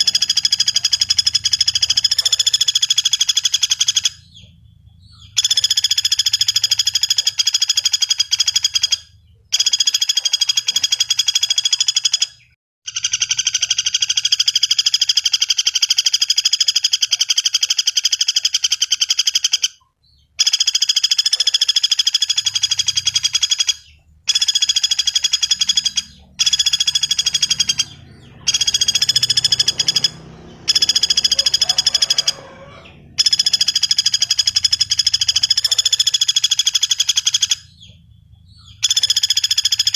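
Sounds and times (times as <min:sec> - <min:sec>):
woodpecker rattling call: 0:00.0 - 0:39.9.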